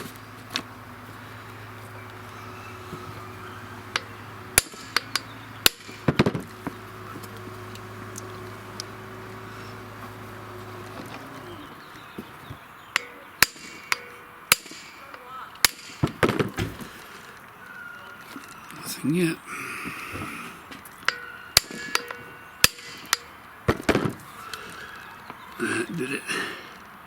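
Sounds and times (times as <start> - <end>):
low steady hum: 0.0 - 26.8
hammer striking impact driver: 3.8 - 9.0, 13.0 - 17.2, 21.0 - 24.2.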